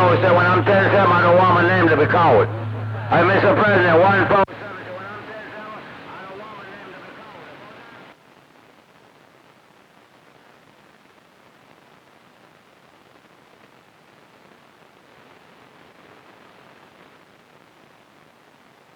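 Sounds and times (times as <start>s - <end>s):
radio static hiss: 0.0s - 10.9s.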